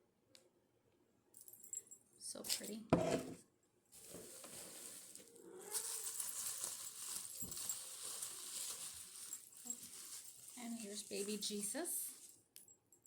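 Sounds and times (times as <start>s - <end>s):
paper rustling and crinkling: 4.0s - 12.4s.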